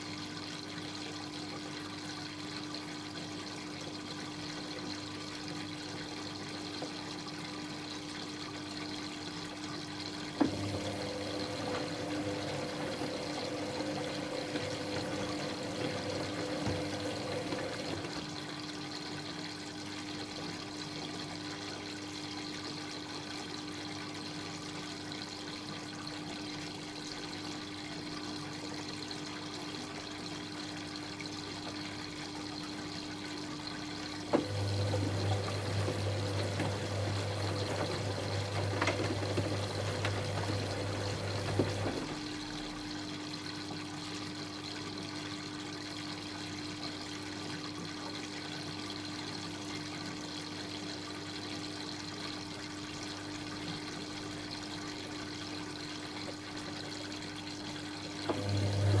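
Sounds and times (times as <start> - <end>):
washing machine hum: 0.0 - 59.0
washing machine water running: 0.0 - 59.0
washing machine click: 10.4 - 18.2, 34.3 - 42.2.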